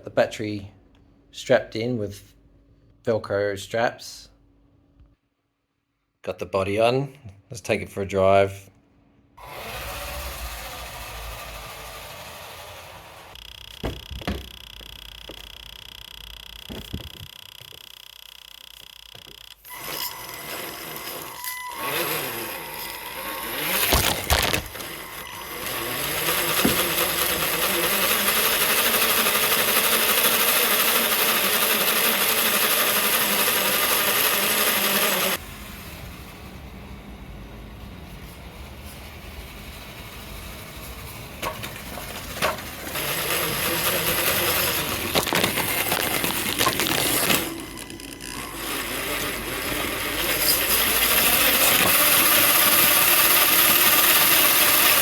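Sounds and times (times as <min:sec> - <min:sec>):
toy truck electric motor whirring: 0:09.4 - 0:36.7, 0:38.6 - 0:55.0
tyres on the ground: 0:10.4 - 0:15.5, 0:19.2 - 0:55.0
chassis rattling: 0:39.4 - 0:55.0.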